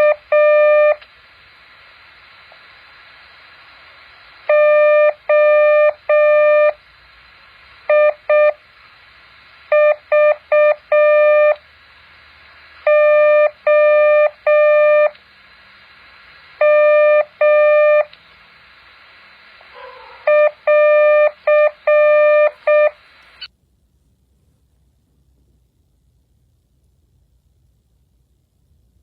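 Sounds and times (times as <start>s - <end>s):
morse code beep: 0.0s - 1.0s, 7.9s - 8.6s, 9.7s - 11.6s, 12.9s - 15.1s, 16.6s - 18.1s, 20.3s - 23.0s.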